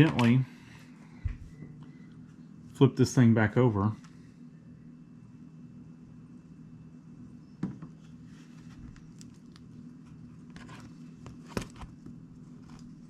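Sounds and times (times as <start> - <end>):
steady low hum: 0.0 - 13.0
knock on work surface: 7.6 - 7.9.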